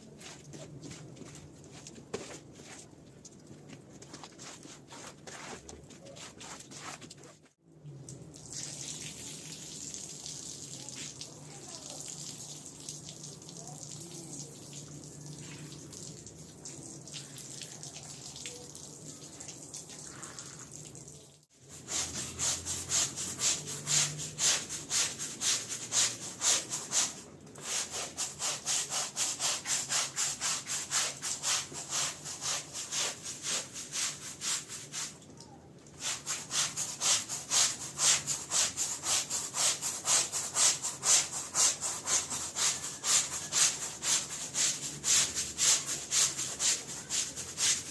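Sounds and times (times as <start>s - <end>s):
stiff brush scrubbing wet rug: 3.9s - 7.5s, 21.6s - 35.2s, 36.0s - 47.9s.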